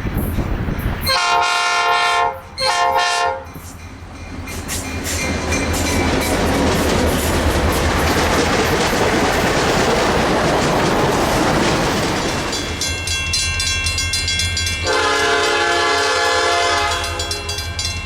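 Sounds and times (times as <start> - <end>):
train rumbling past: 0.0 - 18.0
locomotive air horn: 1.0 - 3.5, 14.8 - 17.6
wheels clattering over rails: 4.4 - 13.3.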